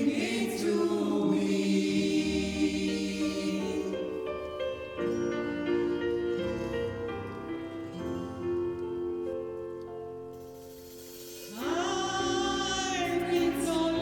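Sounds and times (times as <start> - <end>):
choir singing held chords: 0.0 - 7.2, 11.4 - 14.0.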